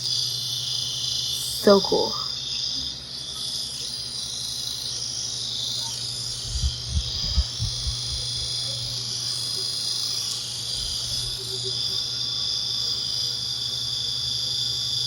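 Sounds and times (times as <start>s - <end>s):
high-pitched chirring hiss: 0.0s - 15.0s
soft low thumps: 6.3s - 9.0s.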